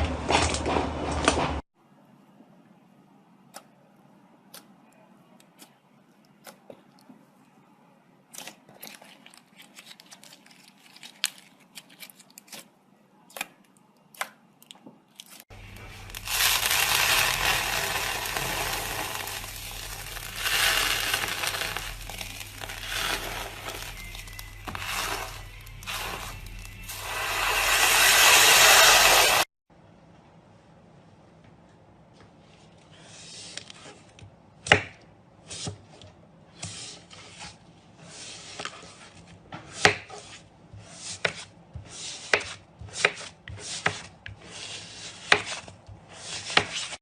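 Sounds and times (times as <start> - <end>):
slime crackling and squishing: 15.1 - 27.4.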